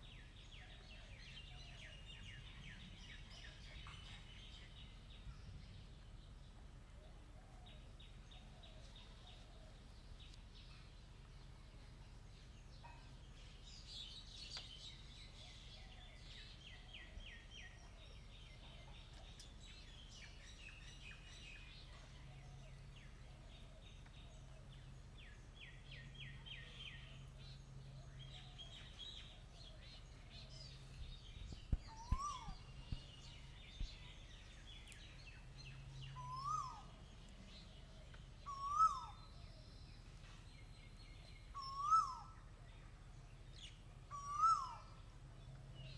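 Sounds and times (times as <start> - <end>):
small birds chirping rapidly: 28.2 - 37.7
soft low thumps: 31.0 - 34.0.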